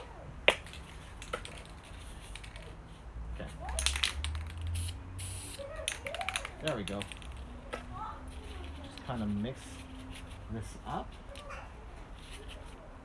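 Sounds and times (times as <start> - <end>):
hard objects clicking and knocking: 0.0 - 10.4.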